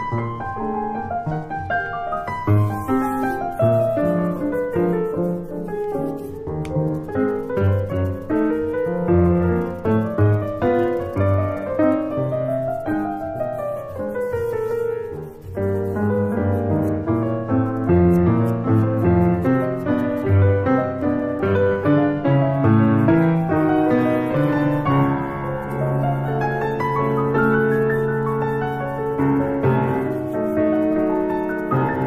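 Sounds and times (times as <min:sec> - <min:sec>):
gentle piano music: 0:00.0 - 0:32.0.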